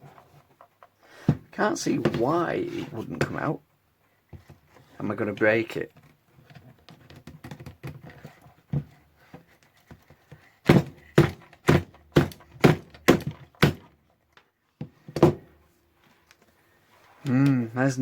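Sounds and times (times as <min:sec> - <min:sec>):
faint clicks and scraping: 0:16.0 - 0:17.3.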